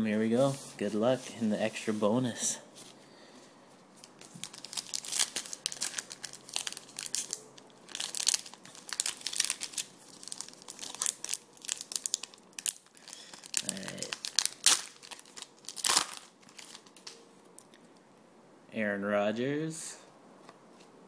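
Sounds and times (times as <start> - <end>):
wrapper torn and crinkled: 4.0 - 17.2.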